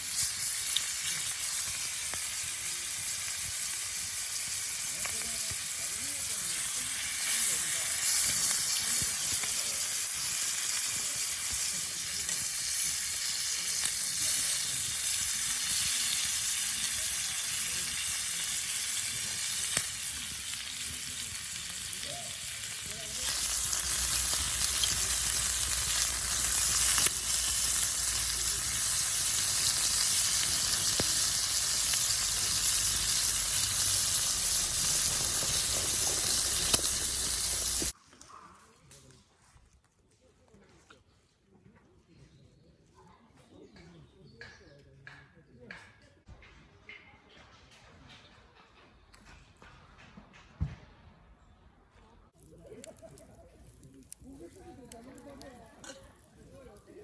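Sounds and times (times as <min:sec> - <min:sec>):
food sizzling in a pan: 0:00.0 - 0:38.0, 0:52.4 - 0:57.0.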